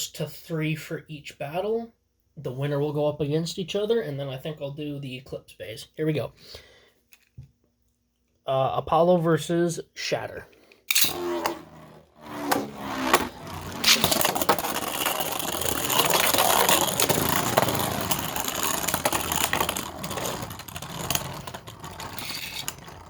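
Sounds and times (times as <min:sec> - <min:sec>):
spinning tops clashing and clacking: 0:10.9 - 0:11.3, 0:12.9 - 0:23.0
spinning tops launched into stadium: 0:12.3 - 0:20.5.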